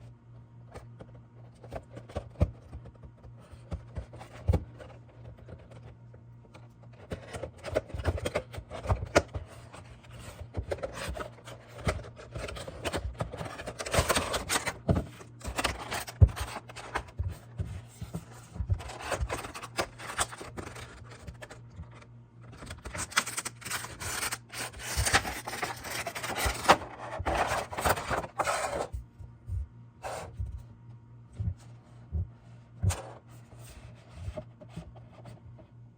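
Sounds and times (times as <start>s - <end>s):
faint low hum: 0.0s - 35.9s
packaging rustling: 18.6s - 28.9s.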